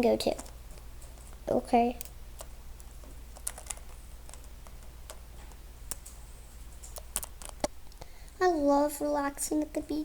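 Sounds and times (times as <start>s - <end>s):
low steady hum: 0.0s - 10.0s
plastic figures clicking and tapping: 3.3s - 6.2s.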